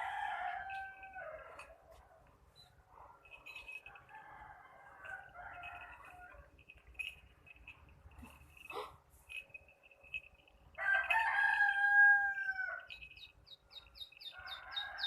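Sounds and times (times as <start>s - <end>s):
rooster crowing: 0.0s - 1.7s, 3.8s - 6.5s, 10.8s - 12.9s, 14.3s - 15.0s
small birds chirping: 12.9s - 15.0s.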